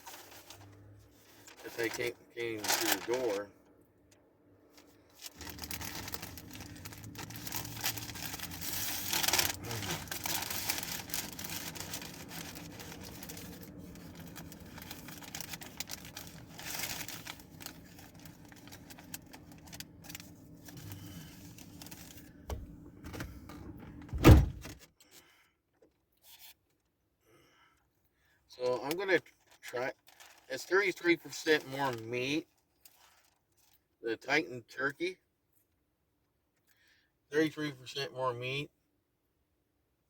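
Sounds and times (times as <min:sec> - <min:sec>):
packaging rustling and crinkling: 0:00.0 - 0:03.4, 0:04.8 - 0:22.4, 0:29.4 - 0:30.5, 0:32.8 - 0:33.8.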